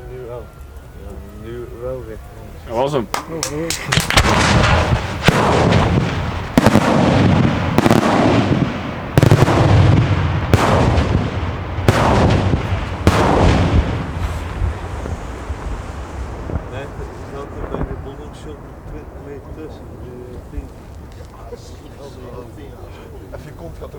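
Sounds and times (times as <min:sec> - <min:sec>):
firework shells bursting: 0:03.1 - 0:19.8.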